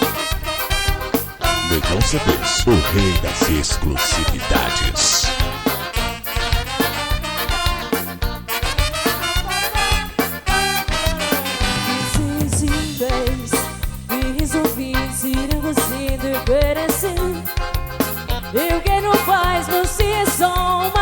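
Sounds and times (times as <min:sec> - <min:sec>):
danceable drum beat: 0:01.4 - 0:07.9.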